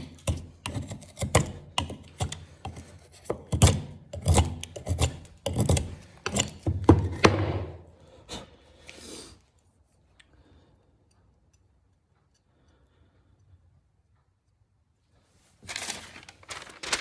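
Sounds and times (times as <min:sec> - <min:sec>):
knife cutting strokes: 0:00.0 - 0:07.2
knife rasp: 0:00.0 - 0:07.2.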